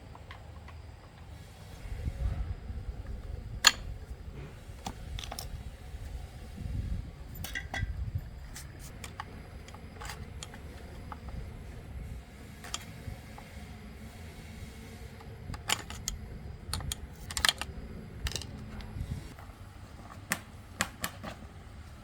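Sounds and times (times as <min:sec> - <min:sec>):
metal tools clicking and clinking: 0:05.1 - 0:05.6, 0:07.3 - 0:11.3, 0:15.5 - 0:19.0.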